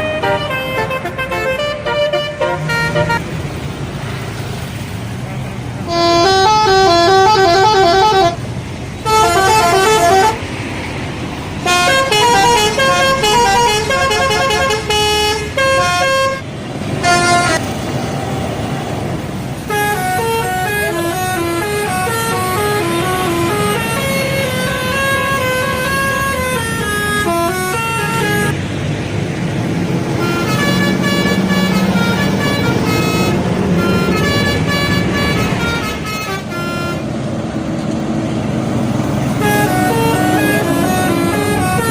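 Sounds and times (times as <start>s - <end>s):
multi-tone air horn melodies: 0.0s - 3.3s, 5.8s - 8.4s, 9.0s - 10.5s, 11.6s - 17.6s, 19.7s - 28.6s, 30.2s - 37.1s, 39.3s - 41.9s
bus engine: 0.0s - 41.9s.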